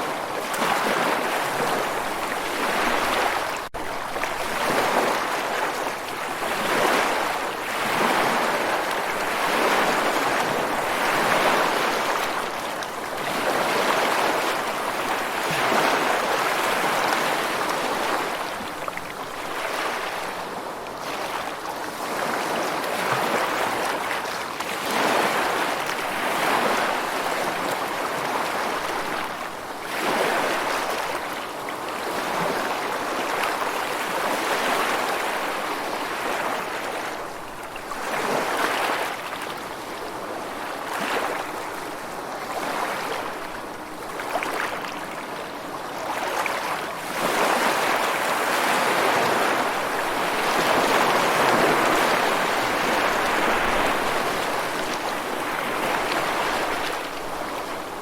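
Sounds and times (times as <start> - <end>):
rushing water surging: 46.1 - 58.0.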